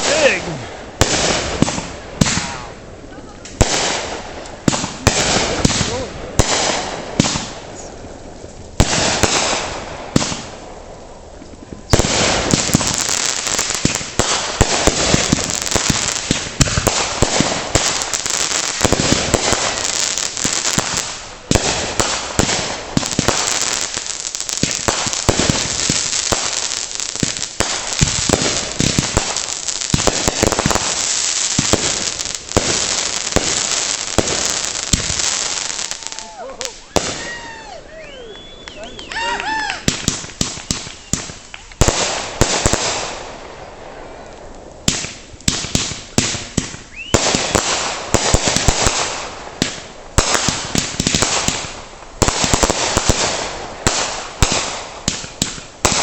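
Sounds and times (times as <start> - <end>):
fireworks bangs: 0.0 - 56.0
fireworks crackling pops: 0.0 - 56.0.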